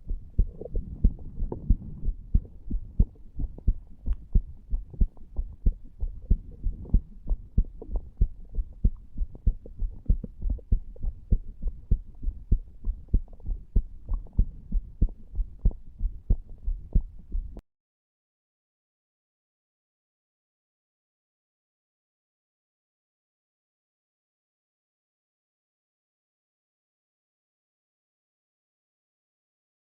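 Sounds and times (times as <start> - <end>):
heartbeat thumps: 0.0 - 17.6.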